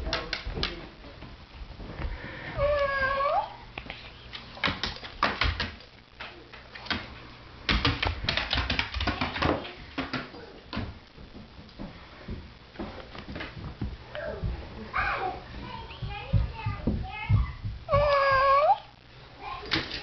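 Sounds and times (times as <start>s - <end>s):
dog claws clicking on hard floor: 0.0s - 0.8s, 3.8s - 10.9s.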